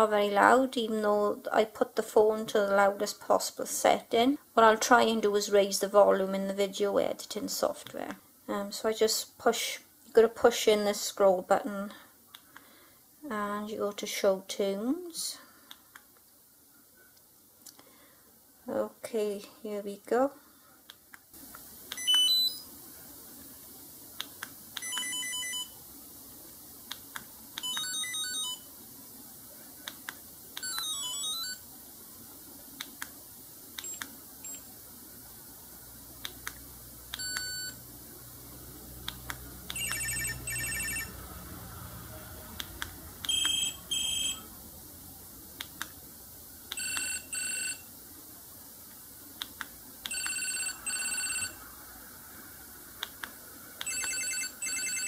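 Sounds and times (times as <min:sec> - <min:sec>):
phone ringtone tunes: 0:22.0 - 0:22.6, 0:24.8 - 0:25.7, 0:27.6 - 0:28.7, 0:30.6 - 0:31.6, 0:39.7 - 0:41.2, 0:43.3 - 0:44.5, 0:46.8 - 0:47.8, 0:50.1 - 0:51.6, 0:53.8 - 0:55.0.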